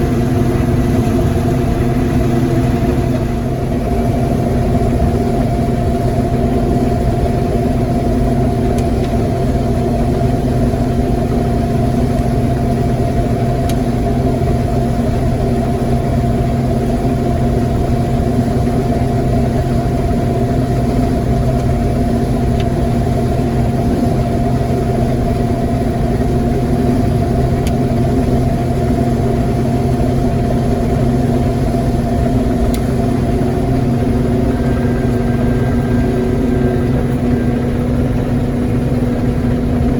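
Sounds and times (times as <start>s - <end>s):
farm machinery engine drone: 0.0s - 39.9s
steady pitched hum: 0.0s - 39.9s.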